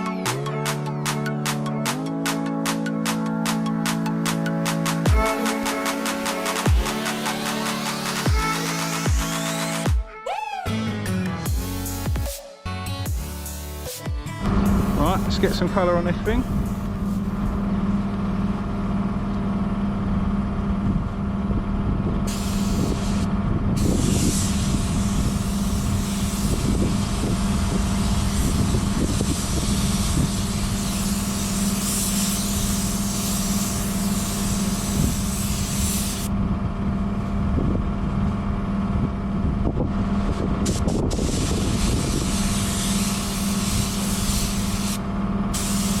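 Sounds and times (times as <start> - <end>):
paint spray gun hissing: 2.3 - 9.9, 14.6 - 15.6, 16.2 - 17.5, 22.3 - 36.3, 40.6 - 46.0
steady mechanical hum: 14.4 - 46.0.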